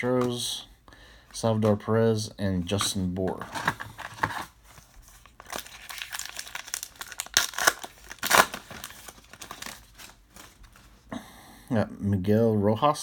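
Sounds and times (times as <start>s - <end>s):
foil wrapper tearing and crinkling: 5.2s - 10.8s.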